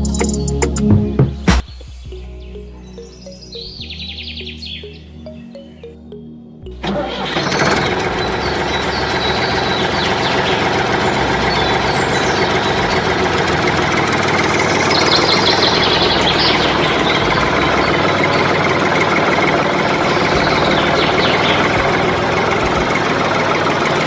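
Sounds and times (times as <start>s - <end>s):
motor running: 6.8s - 24.0s
faint high chirps: 20.0s - 22.8s.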